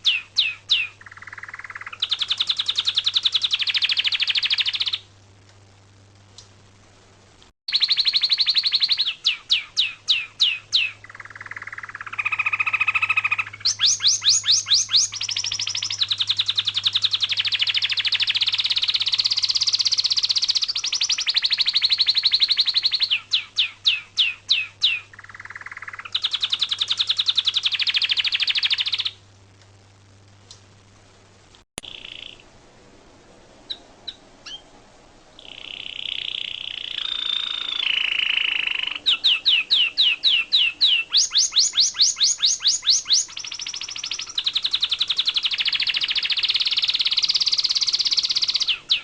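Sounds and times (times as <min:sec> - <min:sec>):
songbird trilling and chirping: 0:00.0 - 0:05.1, 0:07.7 - 0:29.2, 0:31.8 - 0:32.5, 0:33.7 - 0:34.7, 0:35.4 - 0:49.0.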